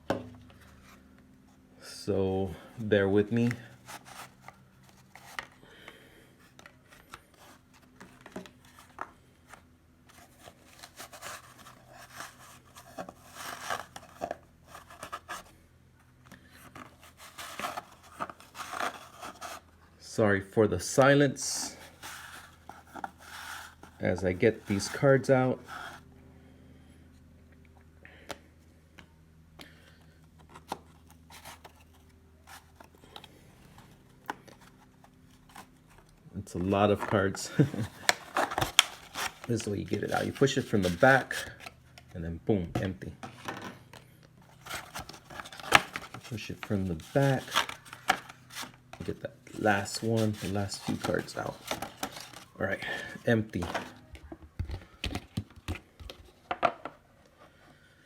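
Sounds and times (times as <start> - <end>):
cards scraping against cardboard: 3.3 - 5.6, 6.4 - 15.6, 16.3 - 19.7, 21.4 - 26.1, 30.3 - 36.0, 36.6 - 42.2, 44.4 - 54.1
trading cards clicking and rustling: 36.8 - 42.1, 42.8 - 56.3.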